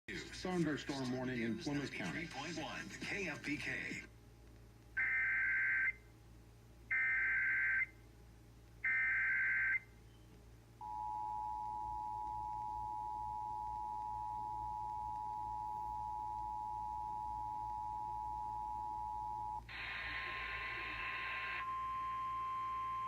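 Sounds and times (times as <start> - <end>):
two-tone attention signal: 20.3 - 23.0.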